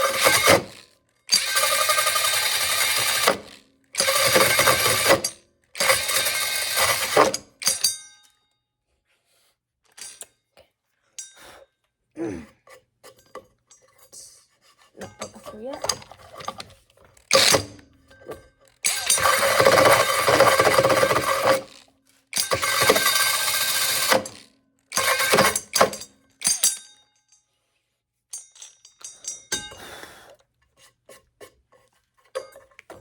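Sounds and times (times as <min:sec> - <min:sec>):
drill hole saw cutting wood: 0:00.0 - 0:07.6, 0:17.3 - 0:17.7, 0:18.8 - 0:21.8, 0:22.4 - 0:26.6
light clinks: 0:11.2 - 0:11.5, 0:28.3 - 0:29.9.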